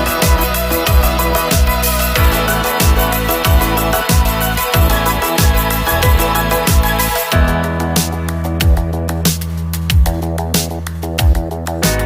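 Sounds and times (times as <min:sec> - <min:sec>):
kick drum beat: 0:00.0 - 0:07.6, 0:09.9 - 0:10.3, 0:11.2 - 0:12.0
electronic music: 0:00.0 - 0:12.0.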